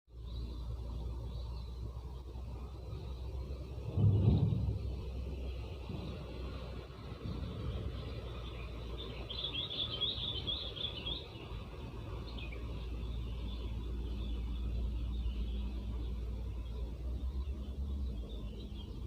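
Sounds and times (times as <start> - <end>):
wind buffeting microphone: 1.8 - 19.0
small bird chirping: 7.2 - 19.0.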